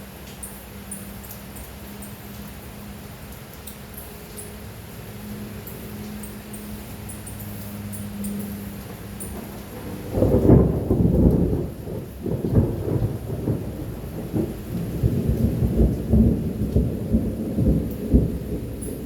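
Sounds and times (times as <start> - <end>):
rain falling: 0.0 - 19.0
thunder rumbling: 8.8 - 19.0.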